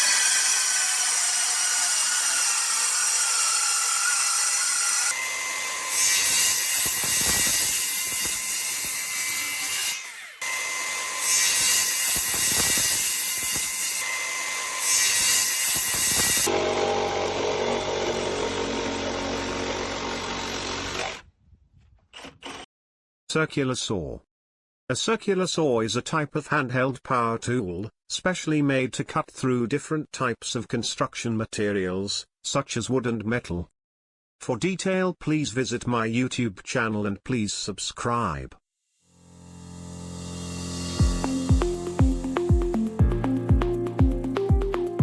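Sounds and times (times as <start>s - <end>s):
circular saw cutting: 0.0s - 21.2s, 39.2s - 43.4s.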